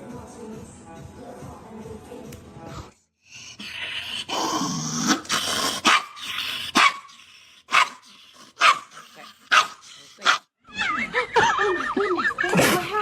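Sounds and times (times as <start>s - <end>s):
dog growling: 3.3s - 10.4s
dog barking: 5.8s - 10.5s.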